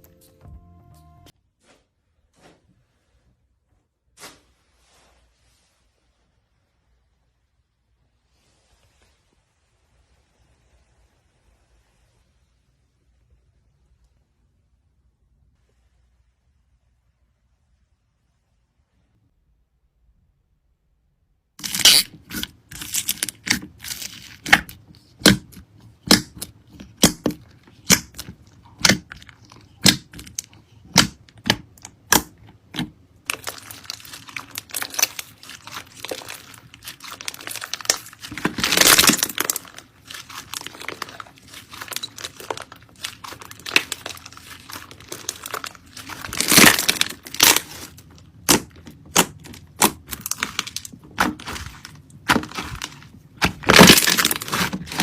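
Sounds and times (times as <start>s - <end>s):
slime crunching: 21.6s - 55.0s
slime crackling pops: 21.7s - 55.0s.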